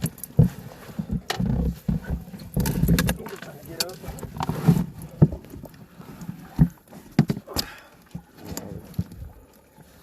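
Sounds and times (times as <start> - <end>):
irregular knocks and thumps: 0.0 - 5.8, 6.5 - 8.3.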